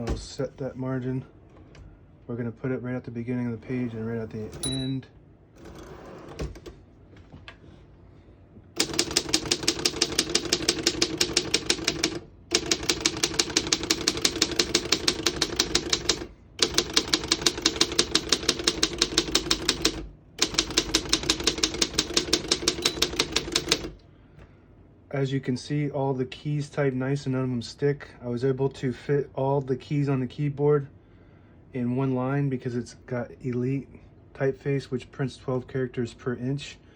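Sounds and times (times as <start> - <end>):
manual typewriter keys clacking: 8.8 - 24.0.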